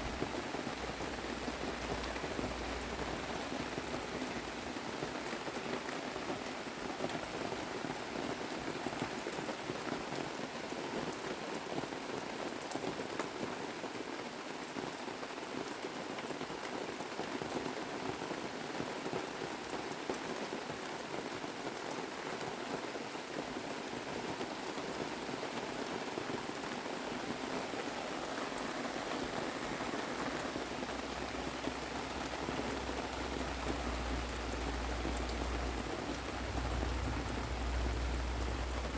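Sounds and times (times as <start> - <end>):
rain pattering: 0.0 - 38.9
low rumble: 33.2 - 38.9.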